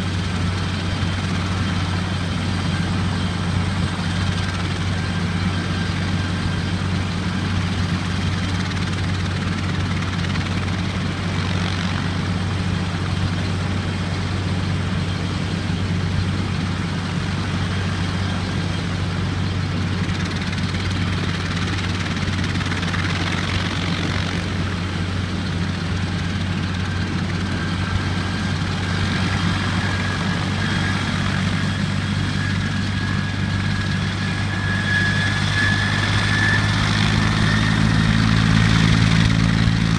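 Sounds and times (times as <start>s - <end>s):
helicopter rotor and engine drone: 0.0s - 39.9s
turbine whine: 0.0s - 39.9s.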